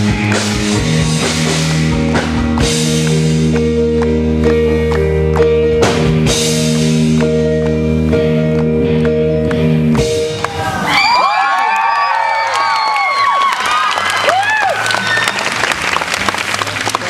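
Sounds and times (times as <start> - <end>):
live piano-rock band: 0.0 - 17.0
audience cheering and screaming: 10.3 - 16.6.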